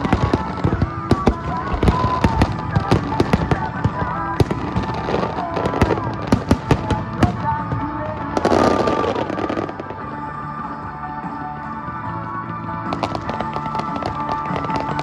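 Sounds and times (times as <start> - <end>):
fireworks bursting: 0.0 - 10.2, 12.9 - 15.0
song playing: 0.0 - 15.0.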